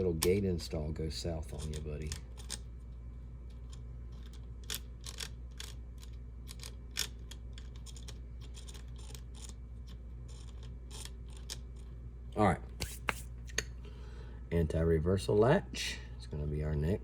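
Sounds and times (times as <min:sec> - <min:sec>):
steady low hum: 0:00.0 - 0:17.0
small parts clicking: 0:01.6 - 0:02.7, 0:03.5 - 0:12.0.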